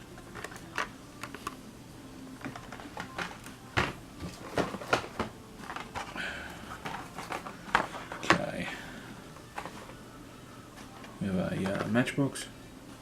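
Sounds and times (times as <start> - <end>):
plastic packaging clicking and rustling: 0.1 - 1.6, 2.4 - 8.6, 11.0 - 12.2.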